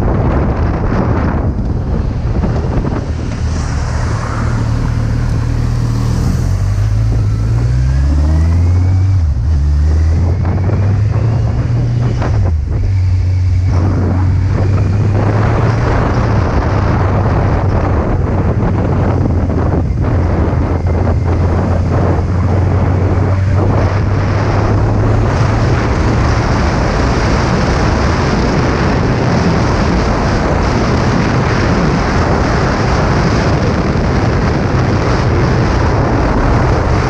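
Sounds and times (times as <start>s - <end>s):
wind noise on microphone: 0.0s - 37.0s
motorcycle engine running: 4.6s - 32.1s.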